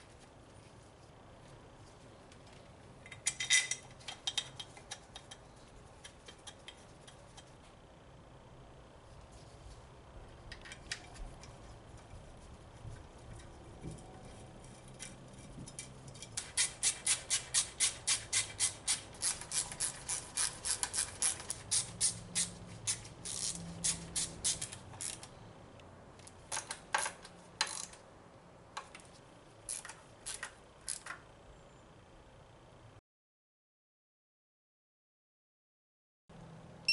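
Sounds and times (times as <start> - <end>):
ratchet wrench clicking: 15.7 - 25.3.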